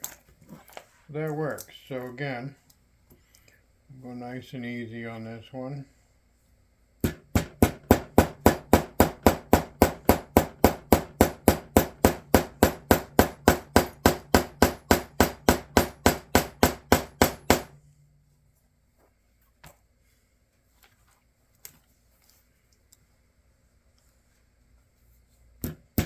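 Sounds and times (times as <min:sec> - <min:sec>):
hammer tapping rivet on anvil: 0:07.0 - 0:17.7.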